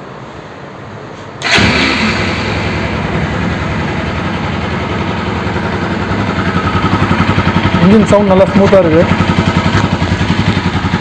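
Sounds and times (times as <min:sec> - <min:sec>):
motorcycle engine idling: 0:01.4 - 0:11.0.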